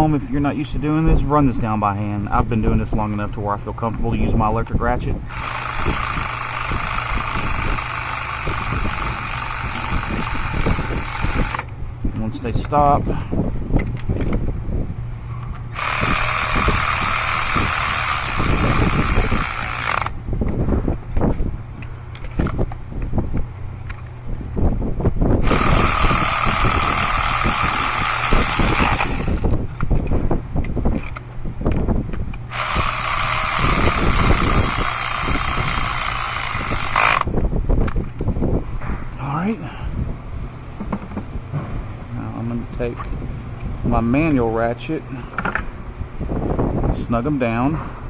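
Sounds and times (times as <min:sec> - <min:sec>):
electric ratchet motor whirring: 0:05.2 - 0:11.7, 0:15.6 - 0:20.2, 0:25.4 - 0:30.1, 0:32.4 - 0:37.4.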